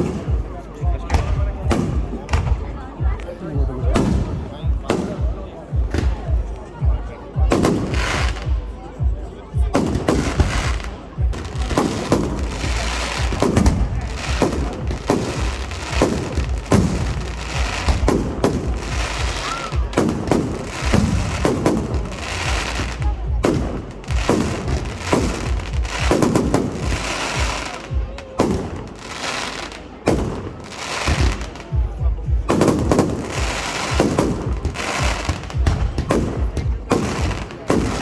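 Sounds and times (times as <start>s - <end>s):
fireworks bangs and crackles: 0.0s - 38.0s.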